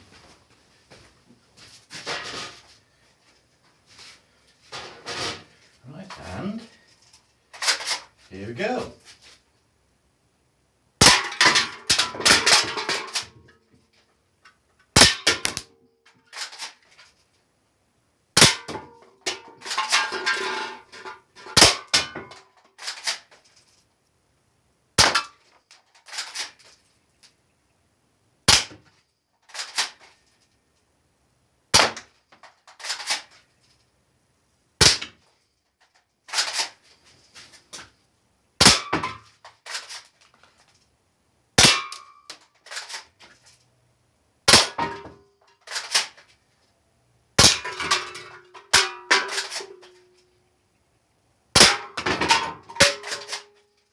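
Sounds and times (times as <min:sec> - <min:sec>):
bb rifle shots cracking: 0:15.0 - 0:15.7
metal targets clattering and ringing: 0:47.4 - 0:49.8, 0:51.6 - 0:53.5.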